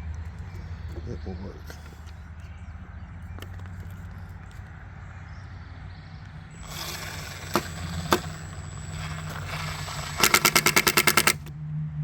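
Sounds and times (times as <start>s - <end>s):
steady low hum: 6.3s - 11.5s
power tool whirring: 6.5s - 11.5s.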